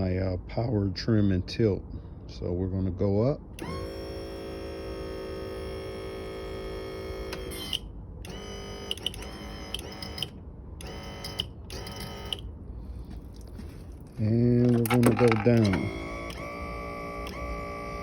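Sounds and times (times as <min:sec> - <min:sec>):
trim motor whining: 0:03.6 - 0:12.4, 0:14.8 - 0:18.0.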